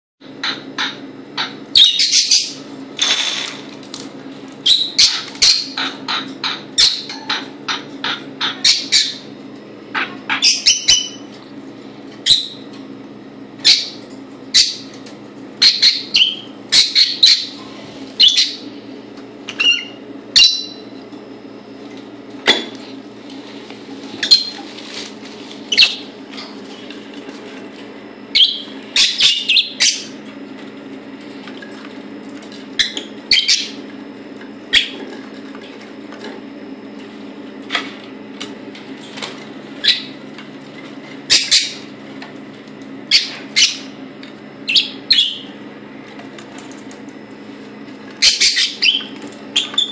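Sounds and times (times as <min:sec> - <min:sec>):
parrot squawking and chirping: 0:00.5 - 0:02.6, 0:04.6 - 0:05.8, 0:06.7 - 0:07.4, 0:08.4 - 0:09.3, 0:09.9 - 0:11.3, 0:12.2 - 0:12.6, 0:13.6 - 0:14.9, 0:15.6 - 0:17.6, 0:18.2 - 0:18.6, 0:19.5 - 0:20.8, 0:24.2 - 0:24.6, 0:25.7 - 0:26.1, 0:28.3 - 0:30.2, 0:32.8 - 0:33.8, 0:34.7 - 0:35.0, 0:39.8 - 0:40.2, 0:41.3 - 0:41.9, 0:43.1 - 0:44.0, 0:44.6 - 0:45.5, 0:48.2 - 0:49.9.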